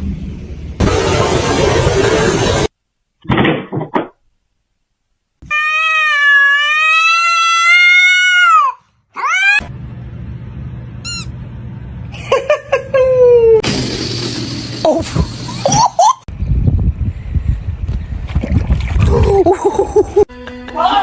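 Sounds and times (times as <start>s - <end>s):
noisy burst: 0.0s - 2.8s
cat meowing: 5.4s - 9.6s.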